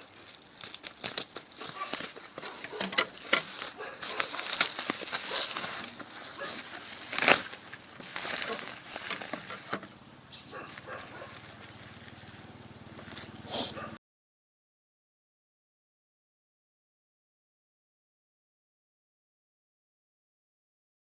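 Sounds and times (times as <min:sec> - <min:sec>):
plastic packaging crinkling: 0:00.0 - 0:10.0, 0:10.6 - 0:13.4.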